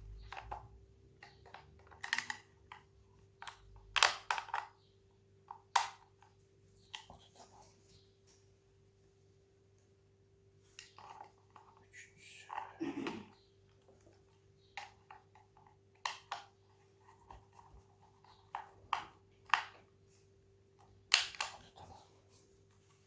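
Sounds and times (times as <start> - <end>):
plastic parts clicking and knocking: 0.0 - 7.1, 10.7 - 11.9, 12.5 - 20.0, 20.8 - 21.9.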